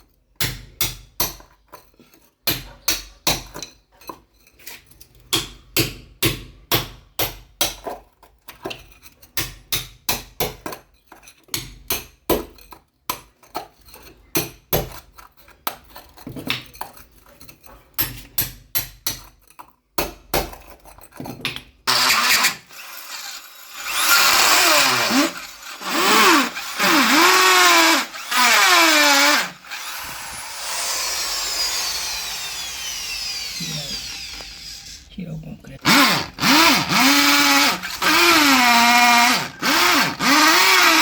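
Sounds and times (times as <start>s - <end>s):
hammer striking concrete: 5.3s - 7.9s, 9.4s - 10.8s
electric drill into concrete: 21.9s - 35.1s, 35.8s - 41.0s.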